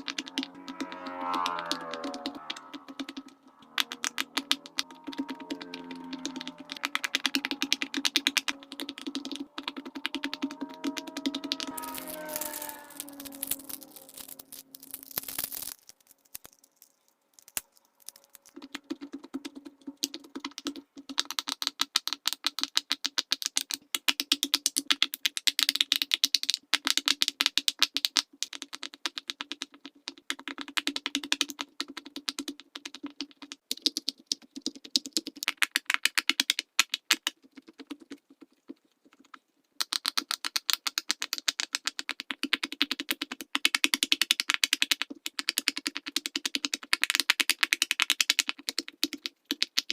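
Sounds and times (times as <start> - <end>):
fidget toy bubbles popping: 0.0 - 39.2.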